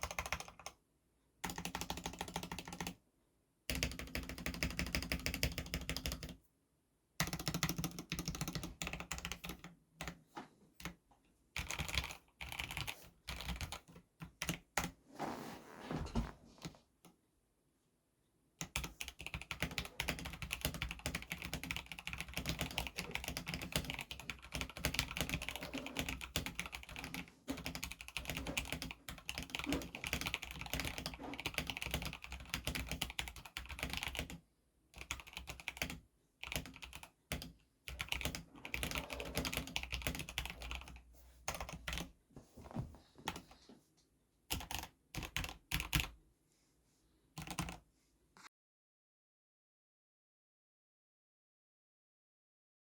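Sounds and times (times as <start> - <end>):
mechanical keyboard typing: 0.0 - 0.7, 1.4 - 3.0, 3.7 - 6.4, 7.2 - 10.2, 11.6 - 14.9, 18.6 - 34.4, 35.0 - 42.1, 44.5 - 46.1, 47.4 - 47.8.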